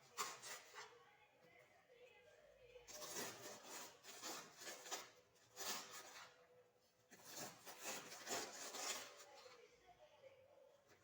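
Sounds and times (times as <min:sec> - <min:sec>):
faint rustling and rubbing: 0:02.8 - 0:10.1.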